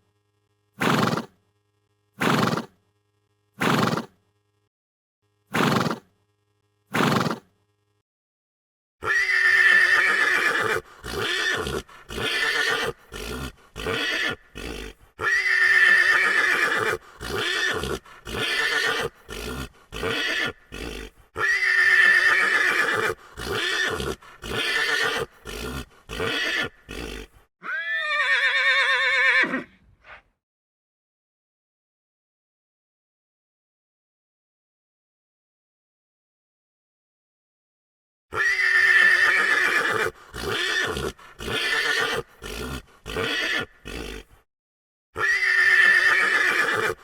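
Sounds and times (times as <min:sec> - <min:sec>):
horse neighing: 0:05.6 - 0:06.0, 0:07.0 - 0:07.4, 0:09.0 - 0:29.8, 0:38.3 - 0:44.4, 0:45.2 - 0:47.0.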